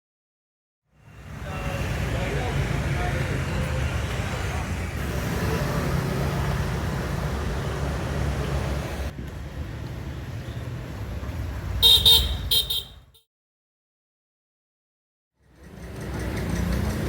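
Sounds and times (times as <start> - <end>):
street traffic rumble: 0.9 - 13.2, 15.4 - 17.0
vehicle horn toots: 11.8 - 13.2.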